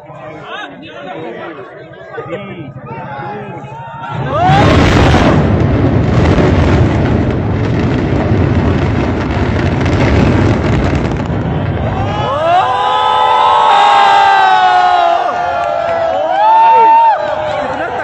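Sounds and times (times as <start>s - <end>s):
demolition blast: 2.7s - 13.7s
deep rumble of building collapse: 2.7s - 18.0s
onlookers shouting: 2.8s - 5.3s, 11.6s - 18.0s.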